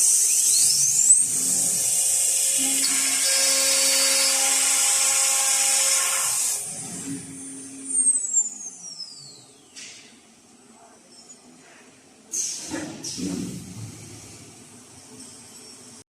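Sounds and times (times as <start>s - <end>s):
machine spindle whining: 0.0s - 9.4s.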